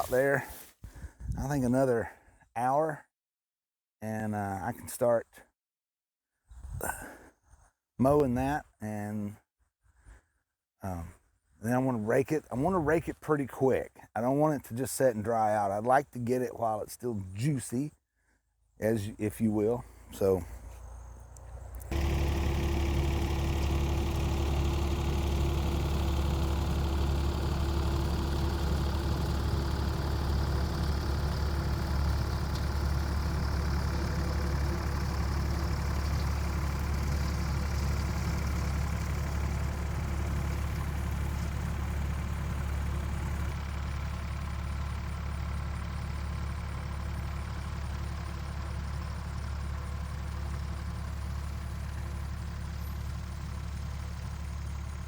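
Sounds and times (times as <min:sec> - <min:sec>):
engine running steadily: 0:20.0 - 0:55.0.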